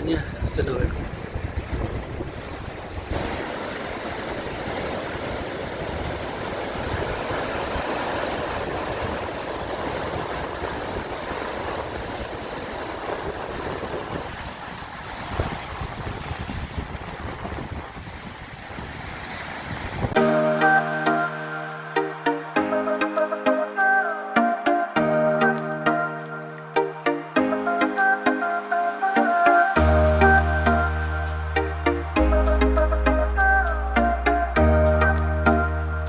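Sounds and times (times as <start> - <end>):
wind buffeting microphone: 0.0 - 20.2
sea surf washing ashore: 0.0 - 35.7.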